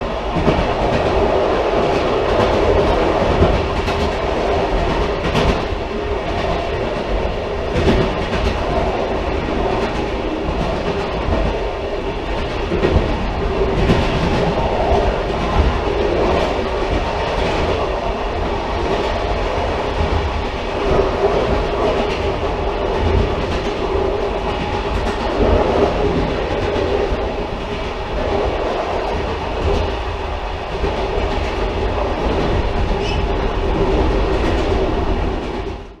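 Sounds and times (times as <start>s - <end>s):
railcar rumbling on track: 0.0s - 36.0s.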